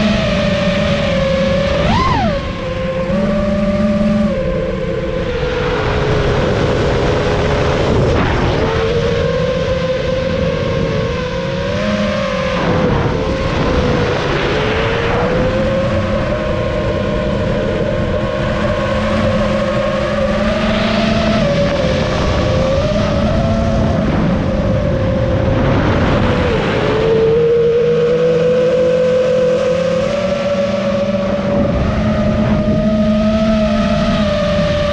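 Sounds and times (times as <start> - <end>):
drone motors whining: 0.0 - 34.9
rushing noise: 1.5 - 4.4.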